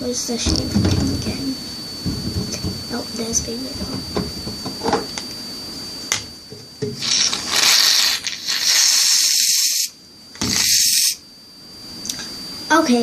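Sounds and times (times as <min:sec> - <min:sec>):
aerosol can spraying: 0:07.0 - 0:11.2.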